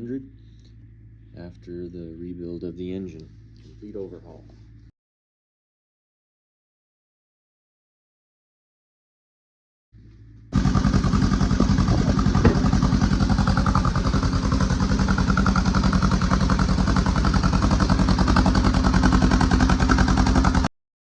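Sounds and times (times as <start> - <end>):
engine starting and running: 10.0 - 20.7.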